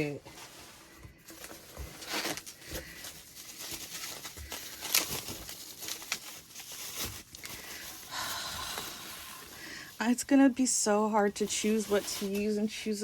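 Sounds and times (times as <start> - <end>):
packaging crinkling: 0.0 - 10.5
packaging tearing: 1.3 - 9.4.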